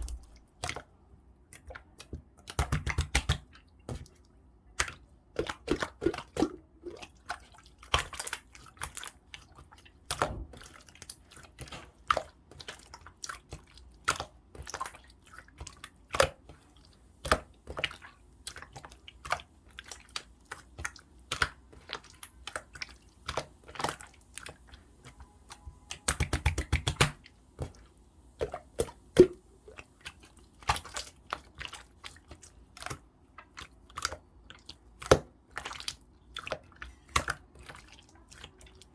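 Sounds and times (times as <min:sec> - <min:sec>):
slime squished by hand: 0:28.4 - 0:38.9.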